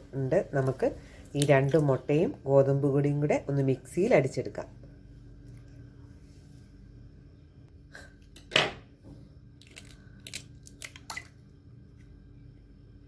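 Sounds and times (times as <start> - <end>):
faint steady hum: 0.0 - 13.0
eggshell clicks and crunches: 9.6 - 11.3.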